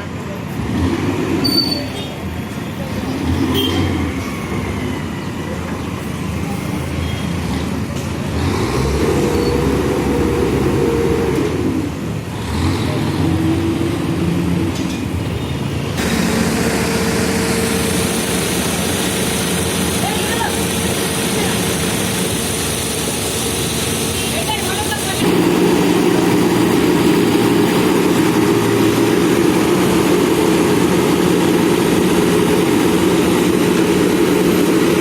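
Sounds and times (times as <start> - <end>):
diesel engine revving: 0.1 - 35.0.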